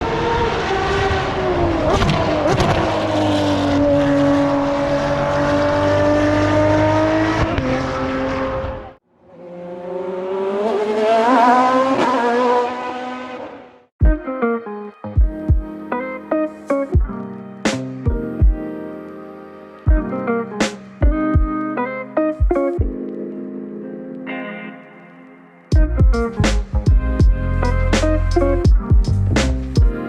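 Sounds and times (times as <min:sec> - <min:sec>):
race car engines revving: 0:00.0 - 0:13.9
strummed guitar music: 0:14.0 - 0:30.0.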